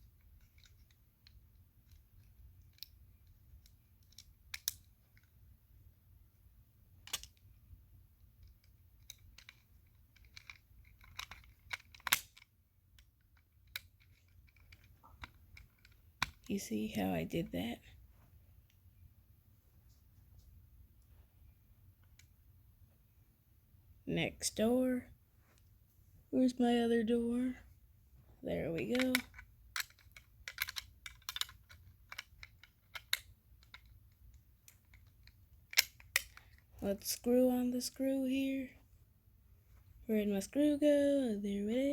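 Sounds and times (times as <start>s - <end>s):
clicks and taps handling toy car parts: 0.0s - 5.4s, 7.0s - 7.6s, 8.2s - 16.7s, 22.0s - 22.4s, 28.5s - 36.9s.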